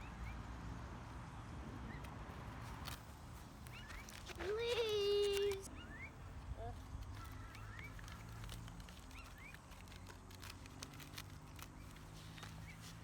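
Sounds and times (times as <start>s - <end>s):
light clicks and ticks: 7.0s - 13.0s.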